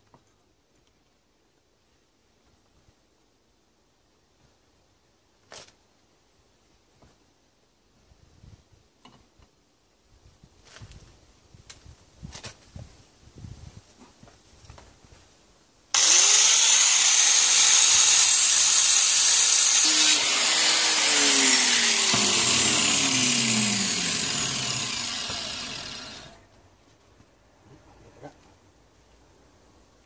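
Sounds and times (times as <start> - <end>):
grinder motor whirring: 16.0 - 26.4
hiss of grinding: 16.0 - 26.4.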